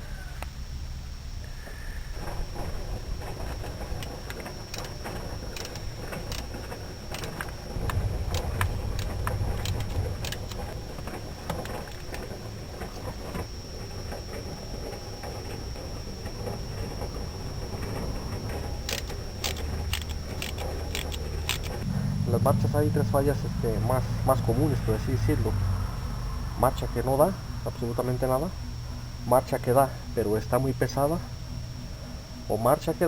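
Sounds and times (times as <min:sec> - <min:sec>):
low rumble: 0:02.2 - 0:33.0
hand tools clicking and knocking: 0:03.9 - 0:12.3, 0:18.8 - 0:21.8.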